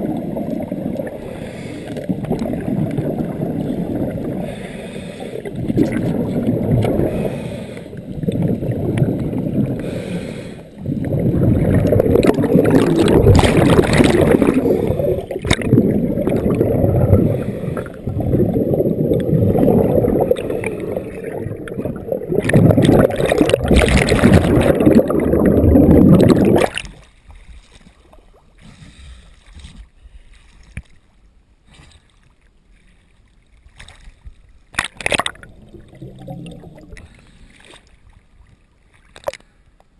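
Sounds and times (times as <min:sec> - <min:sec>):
underwater exhaust bubbles rushing: 0:00.0 - 0:26.9, 0:35.0 - 0:37.3.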